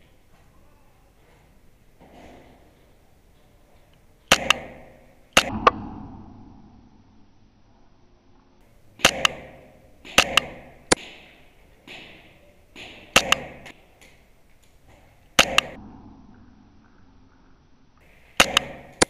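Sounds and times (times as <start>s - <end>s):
airsoft rifle shots: 4.3s - 6.5s, 9.0s - 13.8s, 15.4s - 15.8s, 18.4s - 19.0s.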